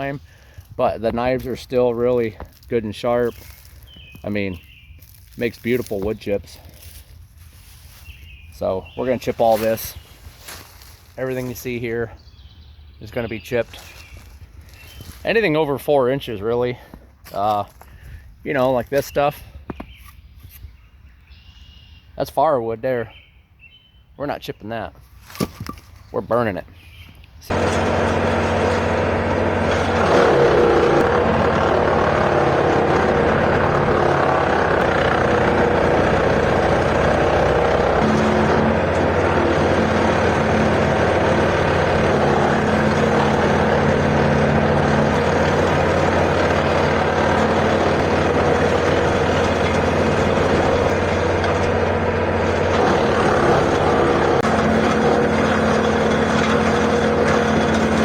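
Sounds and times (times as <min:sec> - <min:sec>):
tractor diesel engine running: 0:00.0 - 0:13.9, 0:27.4 - 0:58.0.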